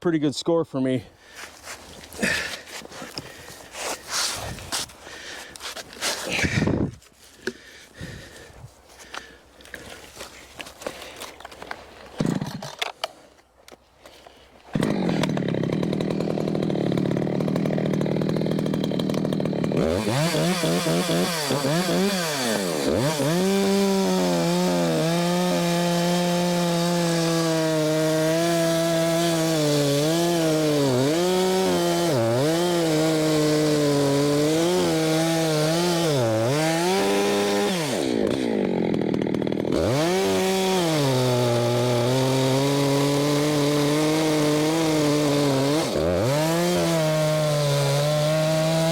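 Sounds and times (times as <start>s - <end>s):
chainsaw cutting wood: 1.4s - 6.8s, 9.2s - 13.0s, 14.6s - 48.9s
chainsaw idling: 1.7s - 4.1s, 14.8s - 48.9s.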